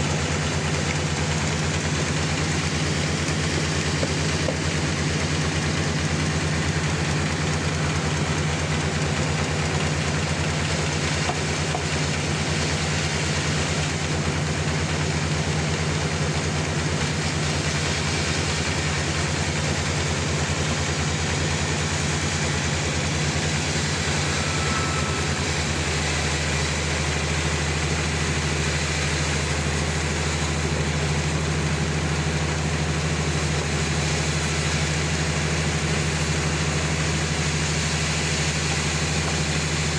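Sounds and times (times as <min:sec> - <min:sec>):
sawmill machine hum: 0:00.0 - 0:39.9.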